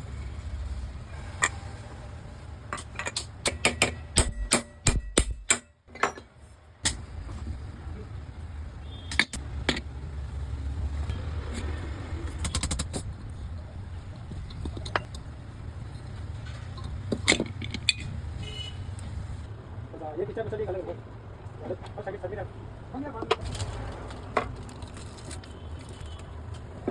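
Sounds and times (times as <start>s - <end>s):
hand tools clicking on metal parts: 2.7s - 7.1s, 9.1s - 9.9s, 11.4s - 18.2s.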